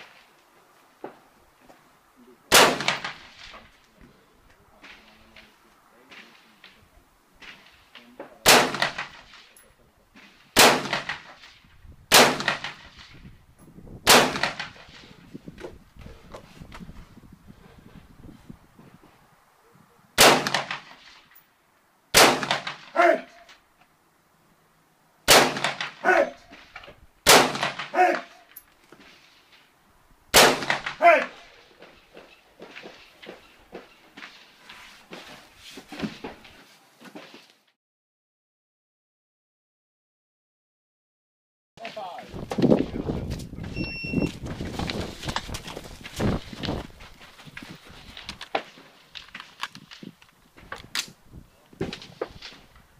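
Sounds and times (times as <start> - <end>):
rifle shots with echo: 2.5 - 3.5, 8.4 - 9.4, 10.6 - 11.4, 12.1 - 13.0, 14.0 - 15.0, 20.2 - 21.0, 22.1 - 23.3, 25.3 - 26.3, 27.2 - 28.3, 30.3 - 31.4.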